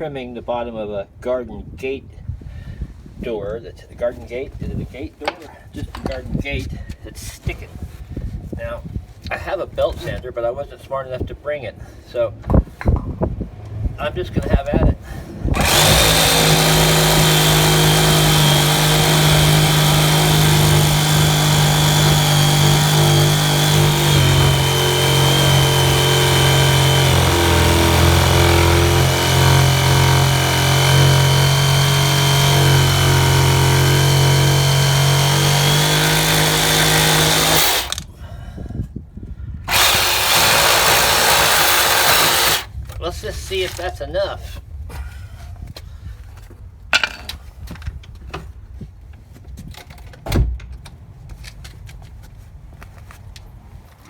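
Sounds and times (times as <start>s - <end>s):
power saw cutting wood: 15.5s - 38.0s, 39.7s - 42.7s.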